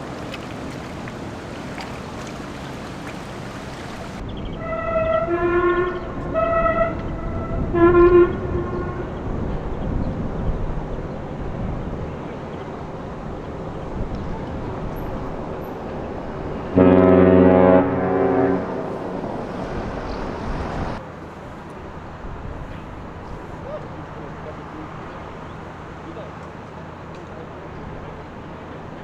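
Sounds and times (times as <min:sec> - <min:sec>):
long deep horn blast: 0:04.2 - 0:10.2, 0:14.2 - 0:21.0
short high horn toots: 0:04.6 - 0:09.2, 0:16.8 - 0:21.0.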